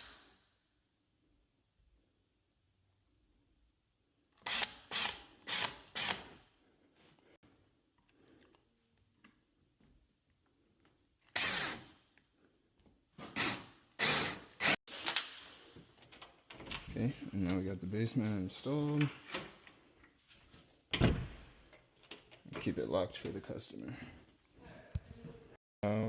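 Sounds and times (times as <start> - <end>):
cordless drill bursts: 4.4 - 6.4, 11.4 - 11.8, 13.4 - 14.8.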